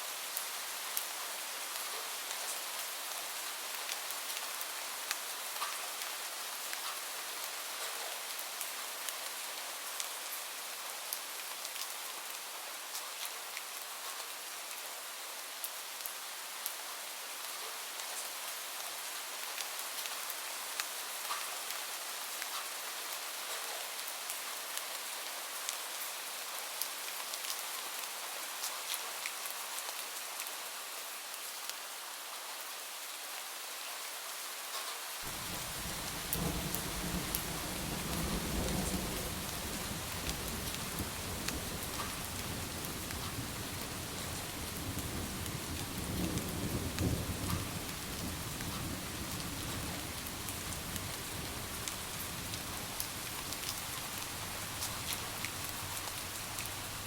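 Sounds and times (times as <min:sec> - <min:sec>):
steady rain: 0:00.0 - 0:57.0
raindrop ticks: 0:35.3 - 0:43.5, 0:46.2 - 0:47.9, 0:50.3 - 0:57.0
low rolling thunder: 0:35.3 - 0:57.0.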